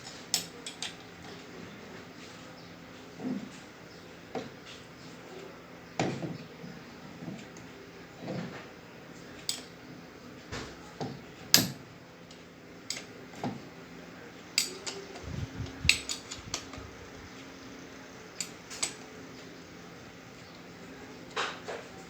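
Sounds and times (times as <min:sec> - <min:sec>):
metallic clinks of tools and parts: 0:14.6 - 0:15.0, 0:15.9 - 0:16.7.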